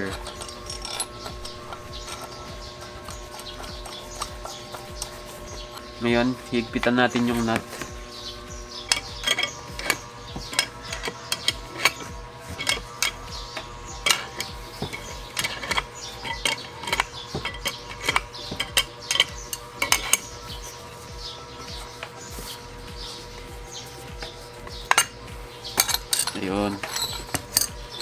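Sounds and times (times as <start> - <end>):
wrench clicking on metal: 0.0 - 5.9, 8.8 - 20.6, 25.7 - 28.0.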